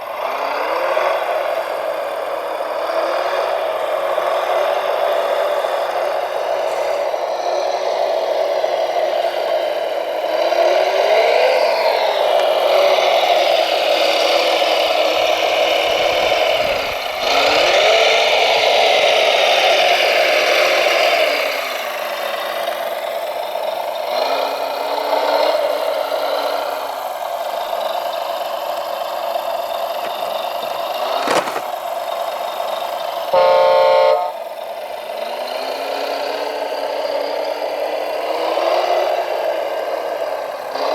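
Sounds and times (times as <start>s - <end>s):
loud horn-like beep: 33.4s - 34.3s.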